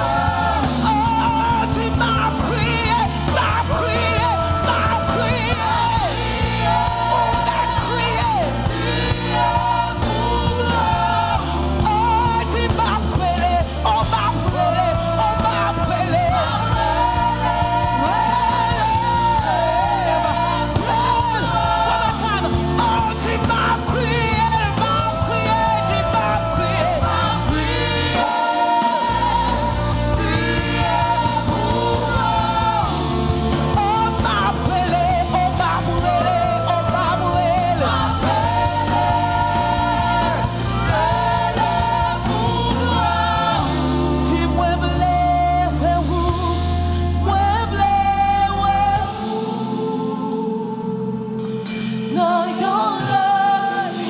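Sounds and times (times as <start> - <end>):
bass line: 0.0 - 50.0
voices singing: 0.0 - 54.0.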